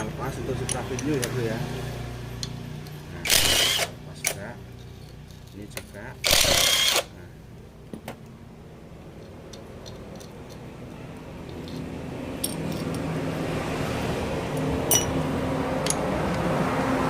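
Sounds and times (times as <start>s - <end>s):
metal tools clinking: 2.3s - 6.0s, 9.1s - 13.1s, 14.5s - 15.2s.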